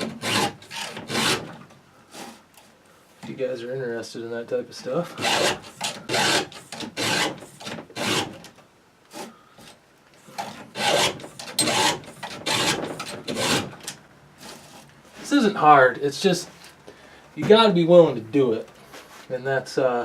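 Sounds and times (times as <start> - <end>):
hand file rasping on steel: 0.0 - 2.4, 5.2 - 8.4, 10.3 - 13.7.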